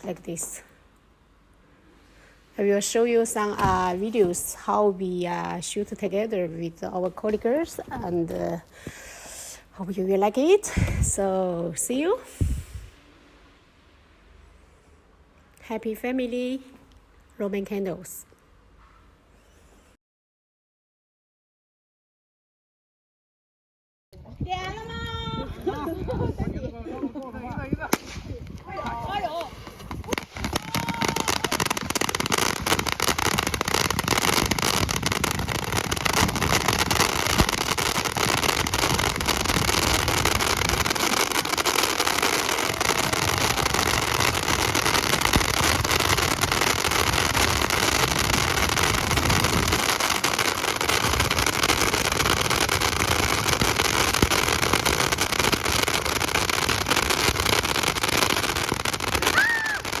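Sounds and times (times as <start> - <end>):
roman candles popping and crackling: 29.8 - 60.0.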